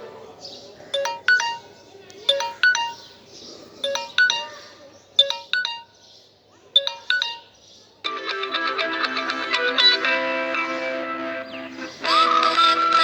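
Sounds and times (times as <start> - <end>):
bell-like ringtone: 1.0 - 3.1, 3.8 - 6.0, 6.8 - 7.6
strummed guitar ringtone: 8.1 - 11.4.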